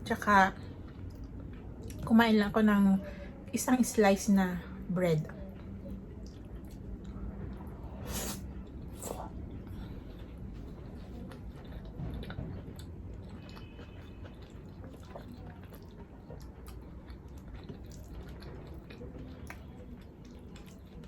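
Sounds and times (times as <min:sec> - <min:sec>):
person chewing food: 0:05.4 - 0:21.0.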